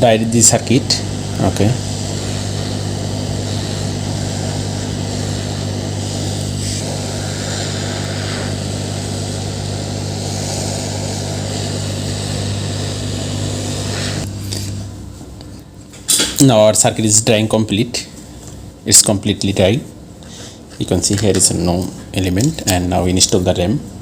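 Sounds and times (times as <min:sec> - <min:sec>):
hot air blower running: 0:00.0 - 0:15.6.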